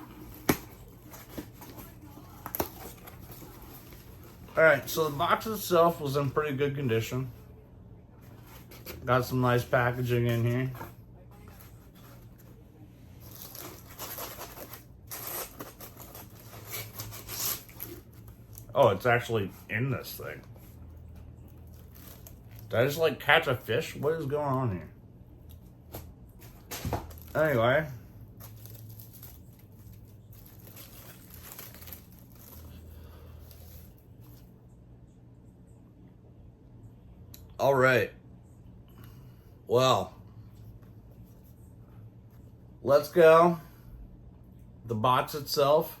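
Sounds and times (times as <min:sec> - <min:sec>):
packaging rustling: 0:13.2 - 0:19.0, 0:21.5 - 0:22.7, 0:26.3 - 0:34.5.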